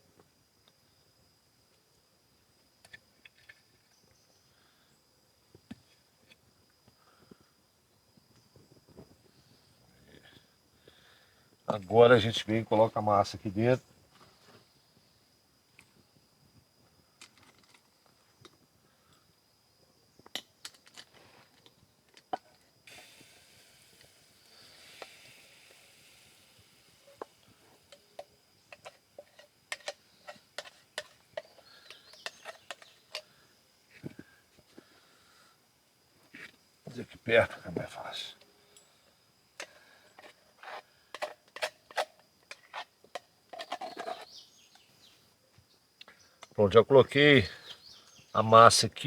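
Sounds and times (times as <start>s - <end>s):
batter sizzling in hot oil: 22.9s - 27.9s
faint bird chirps: 31.4s - 33.4s, 43.6s - 46.6s, 47.3s - 48.5s.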